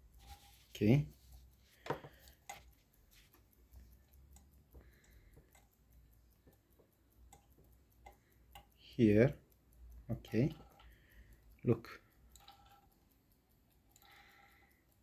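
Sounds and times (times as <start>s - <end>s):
sewing machine clicks and taps: 0.0s - 8.8s.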